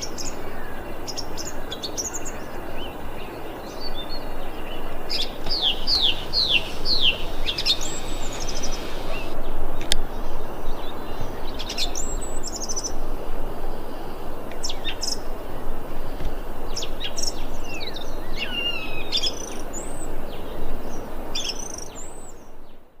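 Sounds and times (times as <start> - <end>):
thrush singing: 0.0 - 9.7
background hiss: 0.0 - 23.0.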